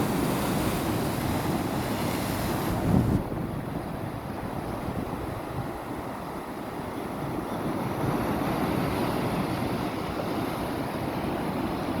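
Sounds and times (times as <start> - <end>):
wind buffeting microphone: 0.0 - 6.0
waves washing over rocks: 0.0 - 12.0.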